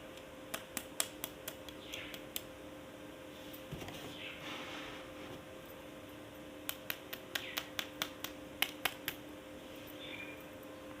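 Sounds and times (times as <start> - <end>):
faint steady hum: 0.0 - 11.0
soft rustle: 3.3 - 5.5.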